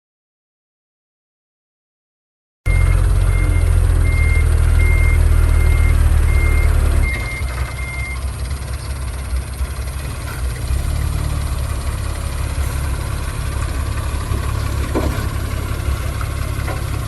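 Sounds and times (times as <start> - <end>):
reversing alarm beeping: 2.7 - 8.3
heavy diesel machine running: 2.7 - 17.0.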